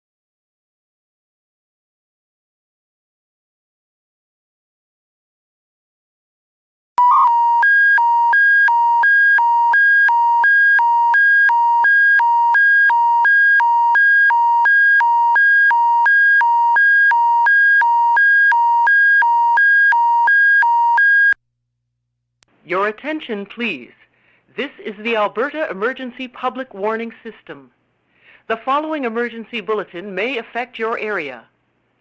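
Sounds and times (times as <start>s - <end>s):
alternating electronic alert tones: 7.0s - 21.4s.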